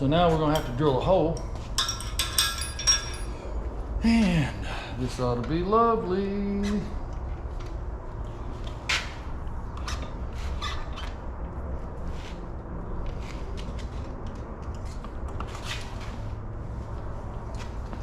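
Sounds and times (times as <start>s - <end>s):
steady low hum: 0.0s - 18.0s
metal tools being handled: 0.3s - 3.5s.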